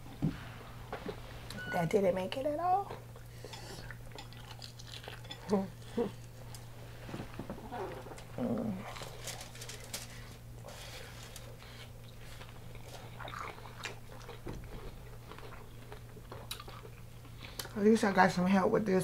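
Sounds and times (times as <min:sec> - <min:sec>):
faint low hum: 0:00.0 - 0:19.0
crunchy food chewing: 0:02.9 - 0:06.7, 0:07.9 - 0:17.8.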